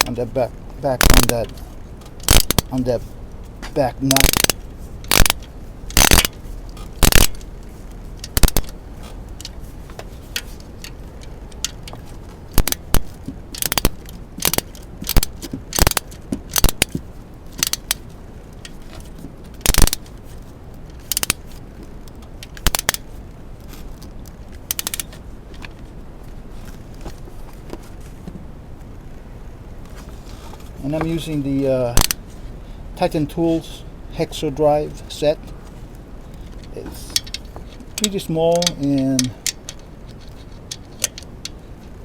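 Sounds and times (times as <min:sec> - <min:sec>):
ratchet clicking: 0:01.0 - 0:02.9, 0:04.0 - 0:09.6, 0:10.3 - 0:18.8, 0:19.6 - 0:20.1, 0:20.9 - 0:21.5, 0:22.3 - 0:23.1, 0:24.7 - 0:25.2, 0:36.3 - 0:42.0
metallic clinks of wrench: 0:36.6 - 0:41.6.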